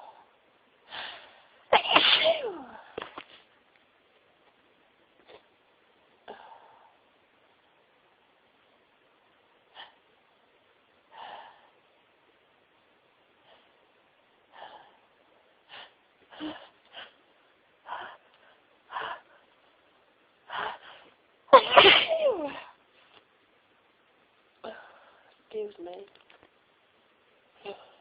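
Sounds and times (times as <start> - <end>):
woman sneezing loudly: 1.7 - 2.8, 21.5 - 22.8.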